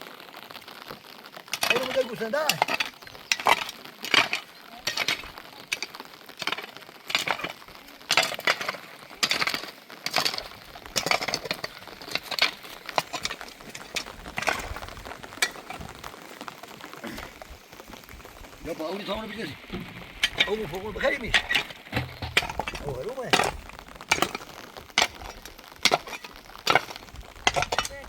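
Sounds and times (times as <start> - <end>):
hard objects clinking and knocking: 1.5 - 16.0, 19.6 - 28.0.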